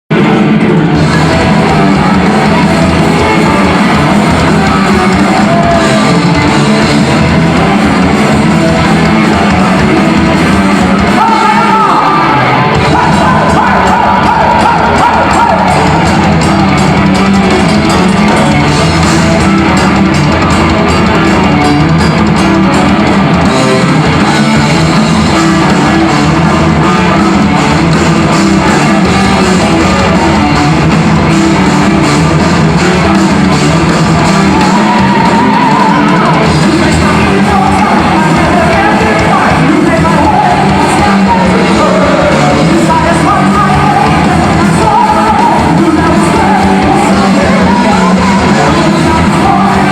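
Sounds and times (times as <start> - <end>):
person singing: 0.1 - 18.7, 31.6 - 49.9
heavy metal band playing live: 0.1 - 49.9.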